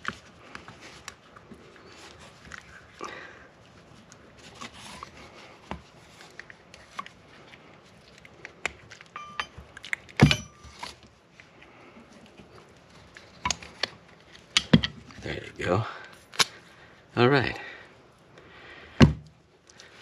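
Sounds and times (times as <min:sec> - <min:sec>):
metal parts clicking and clinking: 0:09.0 - 0:11.0.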